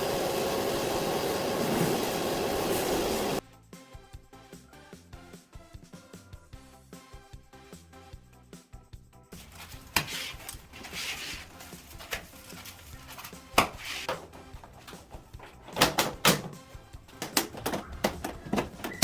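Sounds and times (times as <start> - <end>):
rustling: 9.4 - 15.7
knocks and clicks of installation work: 15.4 - 19.0.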